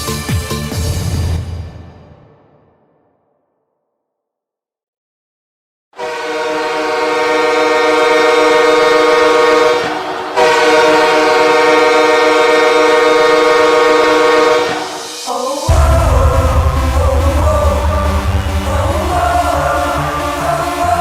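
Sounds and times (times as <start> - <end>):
loud horn blasts: 6.0 - 21.0.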